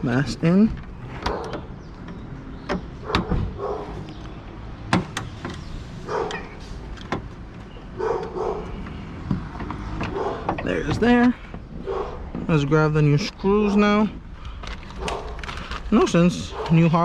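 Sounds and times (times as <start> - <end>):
trunk latch clicks and knocks: 0.6 - 12.6.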